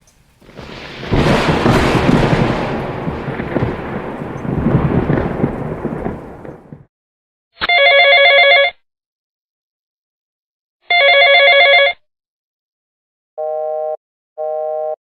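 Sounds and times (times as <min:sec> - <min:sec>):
thunder rumbling: 0:00.0 - 0:06.9.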